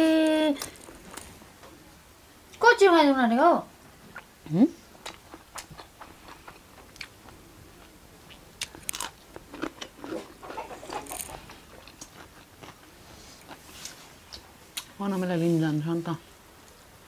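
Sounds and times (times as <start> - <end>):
person chewing food: 5.0 - 14.9.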